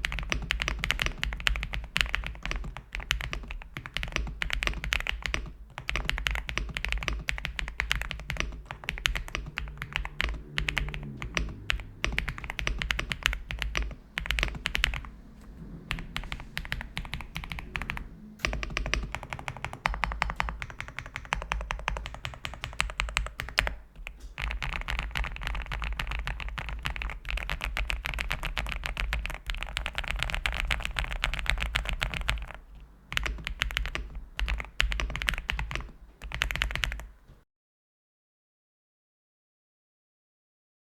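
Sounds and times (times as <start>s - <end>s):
keyboard keystroke clicks: 0.1s - 15.1s, 15.9s - 37.2s
low hum: 7.4s - 24.8s.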